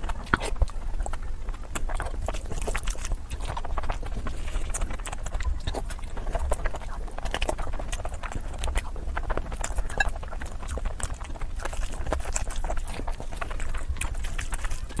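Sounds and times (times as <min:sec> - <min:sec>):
person chewing and mouth sounds: 0:00.0 - 0:15.0.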